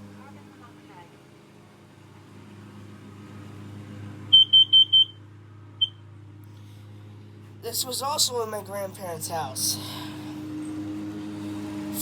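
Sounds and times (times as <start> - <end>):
high-pitched alarm beeps: 4.3 - 5.2
low steady hum: 4.3 - 12.0.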